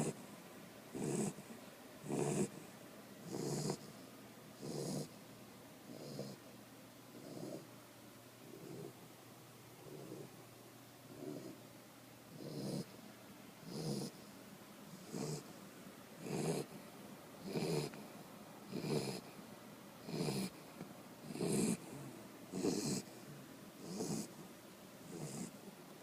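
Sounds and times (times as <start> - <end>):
dog snoring: 0.0 - 0.2, 0.9 - 4.0, 4.6 - 5.2, 5.9 - 6.5, 7.1 - 7.7, 8.4 - 9.1, 9.8 - 10.4, 11.1 - 11.6, 12.3 - 13.0, 13.6 - 14.3, 14.9 - 15.6, 16.2 - 16.8, 17.4 - 18.0, 18.7 - 19.4, 20.0 - 24.4, 25.0 - 25.6.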